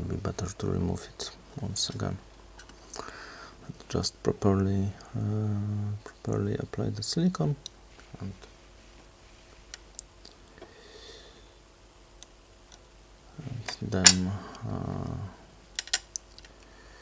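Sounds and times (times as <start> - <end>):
man murmuring: 3.6 - 7.6, 13.3 - 15.4
small tools clicking and tapping: 15.8 - 16.6.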